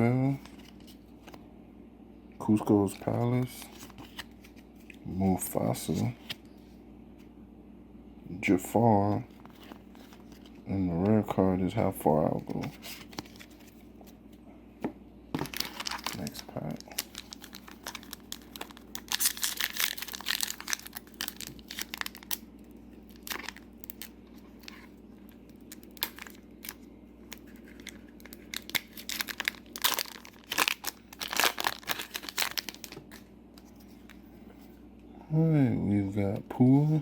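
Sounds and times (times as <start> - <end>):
foil wrapper tearing and crinkling: 15.4 - 22.5, 23.1 - 24.9, 25.5 - 33.2.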